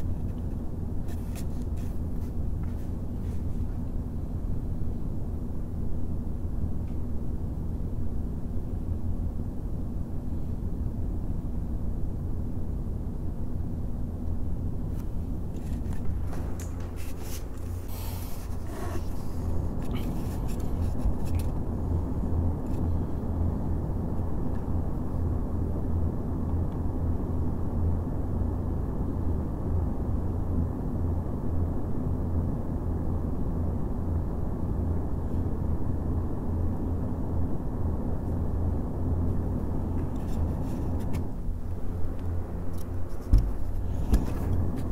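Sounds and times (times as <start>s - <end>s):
fans being handled: 0.0s - 4.0s, 14.9s - 21.7s, 39.9s - 44.9s
fans whirring: 0.0s - 44.9s.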